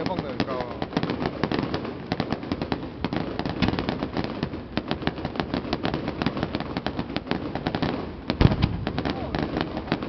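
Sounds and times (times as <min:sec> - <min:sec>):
fireworks popping and banging: 0:00.0 - 0:10.0.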